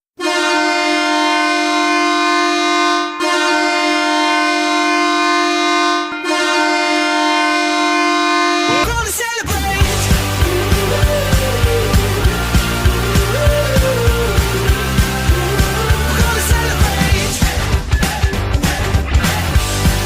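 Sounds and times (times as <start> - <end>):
hockey goal horn blasts: 0.2 - 8.9.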